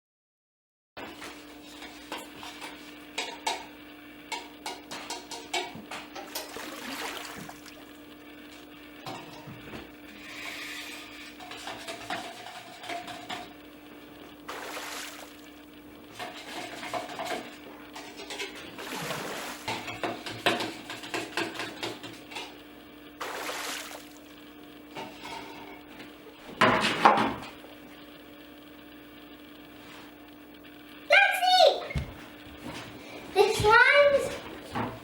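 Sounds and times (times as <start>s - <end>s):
steady low hum: 5.8s - 11.6s, 12.9s - 21.0s
water pouring: 6.2s - 8.1s, 14.5s - 15.6s, 18.8s - 19.9s, 23.2s - 24.3s
utensil scraping a bowl: 10.1s - 13.4s.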